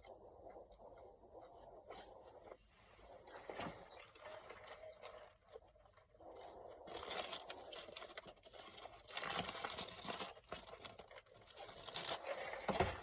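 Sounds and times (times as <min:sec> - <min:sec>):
paper wrapper crinkling: 0:06.8 - 0:13.0.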